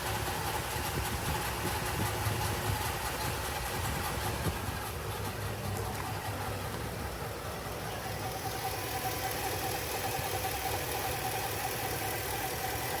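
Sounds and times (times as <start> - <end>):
truck engine idling: 0.0 - 13.0.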